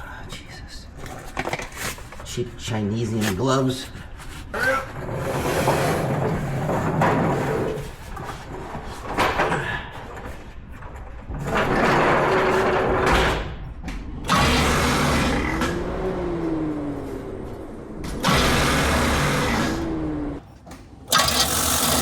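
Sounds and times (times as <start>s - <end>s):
starter cranking engine slowly: 21.1s - 22.0s.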